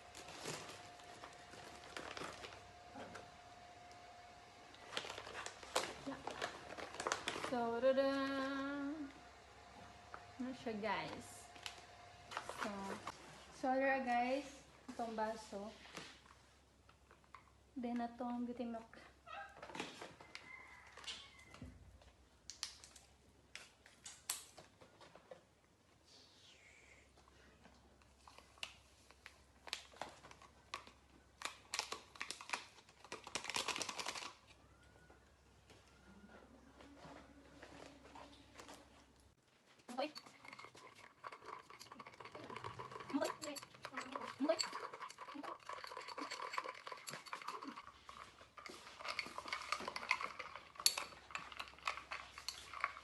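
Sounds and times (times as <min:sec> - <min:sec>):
plastic packaging crinkling: 0:00.0 - 0:03.3, 0:04.7 - 0:08.4, 0:28.3 - 0:34.6.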